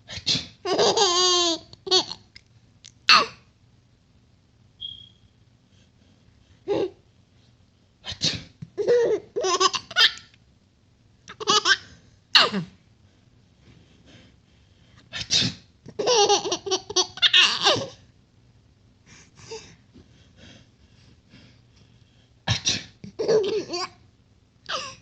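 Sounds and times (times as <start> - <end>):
baby laughing: 0.7 - 2.3, 8.8 - 10.3, 11.3 - 12.7, 15.9 - 18.0, 23.0 - 24.0
man sneezing: 15.1 - 15.6, 22.5 - 23.0.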